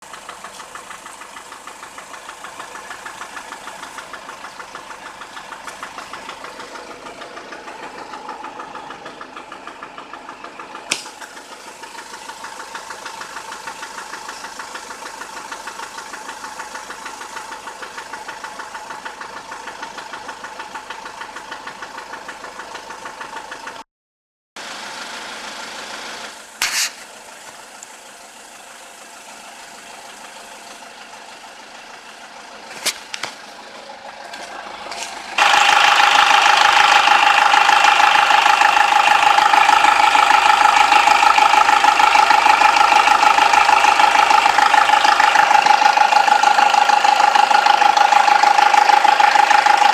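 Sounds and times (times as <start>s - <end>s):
engine idling with rhythmic knock: 0.0s - 23.9s, 24.6s - 49.9s
sharp click: 10.9s - 11.2s, 26.6s - 27.1s.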